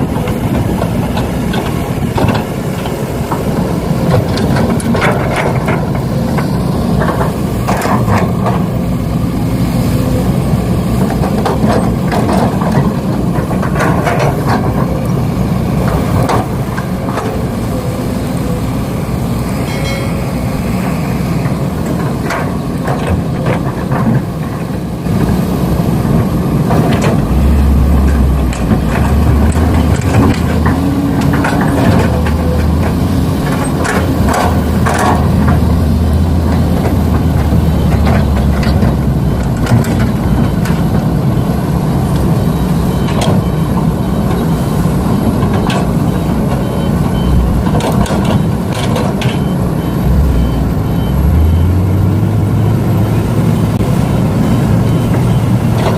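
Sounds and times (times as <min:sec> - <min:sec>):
model truck engine drone: 0:14.0 - 0:55.9.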